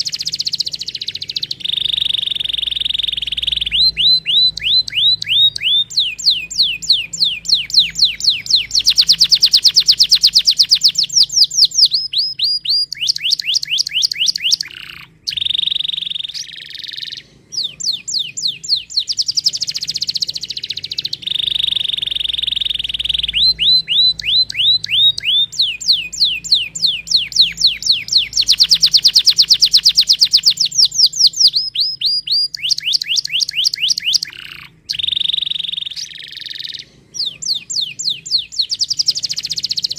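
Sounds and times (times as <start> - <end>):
canary singing: 0.0 - 39.9.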